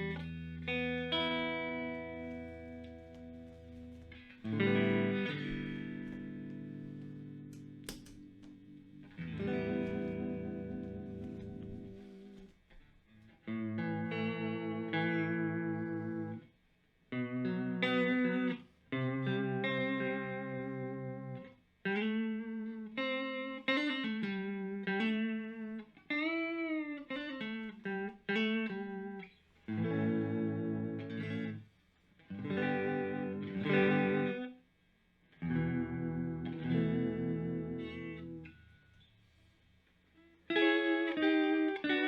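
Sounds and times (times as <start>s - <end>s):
electric guitar with vibrato effect: 0.0s - 16.5s, 17.1s - 34.6s, 35.3s - 39.3s, 40.1s - 42.0s.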